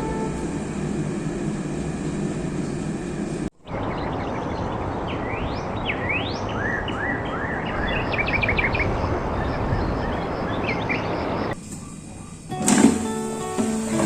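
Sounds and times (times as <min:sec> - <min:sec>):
outdoor background hiss: 0:00.0 - 0:14.0
birds whistling and chirping: 0:03.7 - 0:12.5.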